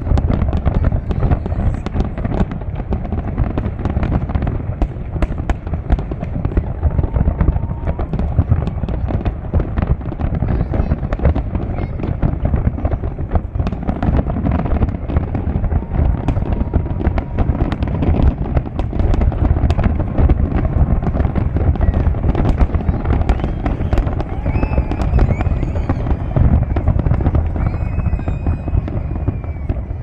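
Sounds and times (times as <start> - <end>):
fireworks bangs and crackling: 0.0 - 30.0
firework whistling: 5.4 - 30.0
low rumble: 10.6 - 30.0.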